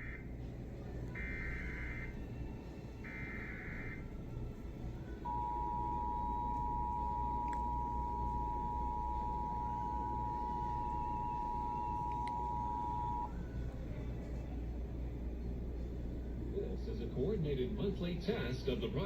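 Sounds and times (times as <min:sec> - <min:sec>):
low background hum: 0:00.0 - 0:19.0
two-tone attention signal: 0:01.2 - 0:02.1, 0:03.1 - 0:04.0, 0:05.2 - 0:13.3
warbling digital data tones: 0:05.3 - 0:13.3.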